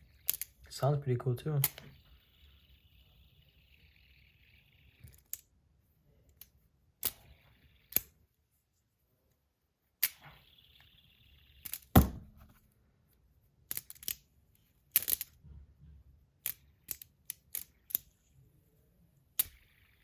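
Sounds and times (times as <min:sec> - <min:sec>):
fidget spinner clicks and knocks: 0:00.0 - 0:00.8, 0:01.5 - 0:05.6, 0:06.3 - 0:08.2, 0:10.0 - 0:12.6, 0:13.6 - 0:18.4, 0:19.3 - 0:20.0.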